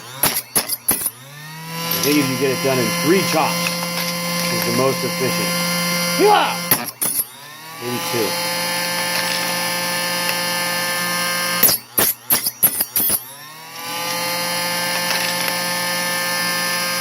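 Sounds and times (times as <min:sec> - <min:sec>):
chop saw motor whine: 0:00.0 - 0:17.0
sharp metallic clicks and taps: 0:11.6 - 0:13.3.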